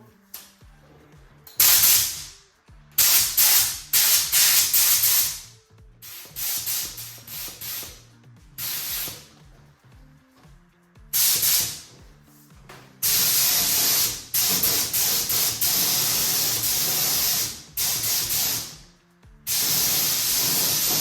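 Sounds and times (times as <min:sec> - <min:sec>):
spray gun hissing: 0:01.6 - 0:02.4, 0:03.0 - 0:09.4, 0:11.1 - 0:12.0, 0:13.0 - 0:18.9, 0:19.5 - 0:21.0.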